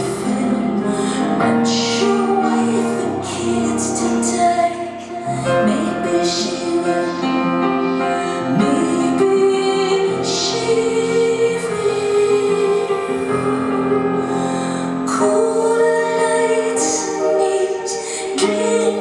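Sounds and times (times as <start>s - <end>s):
sustained piano chords: 0.0s - 19.0s
woman singing slow notes: 15.0s - 19.0s.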